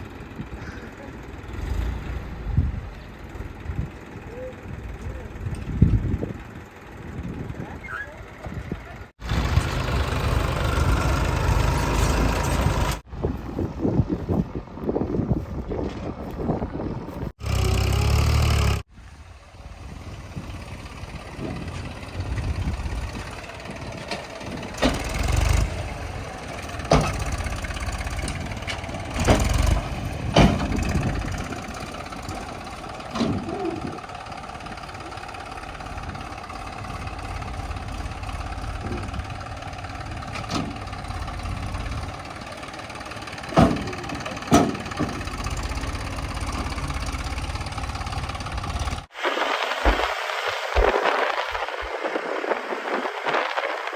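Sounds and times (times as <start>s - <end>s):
backhoe diesel engine running: 0.0s - 49.1s
knocks and clanks: 26.6s - 33.8s, 43.4s - 46.9s
loud rush of noise: 49.1s - 53.9s.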